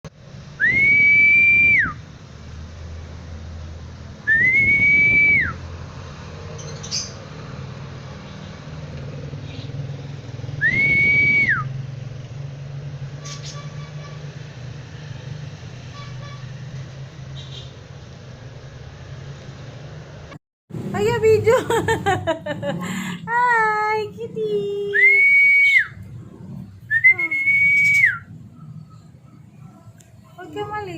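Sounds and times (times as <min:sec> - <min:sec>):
long level whistles: 0:00.6 - 0:02.1, 0:04.2 - 0:05.7, 0:10.5 - 0:11.8, 0:24.9 - 0:26.0, 0:26.8 - 0:29.1.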